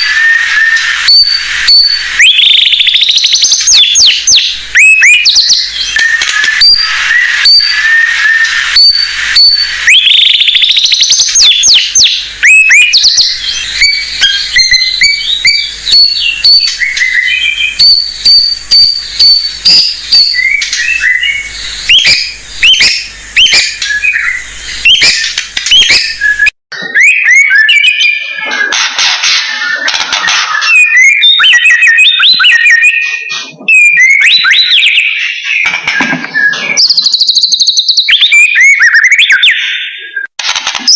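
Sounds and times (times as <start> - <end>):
songbird singing: 0.0 - 28.5.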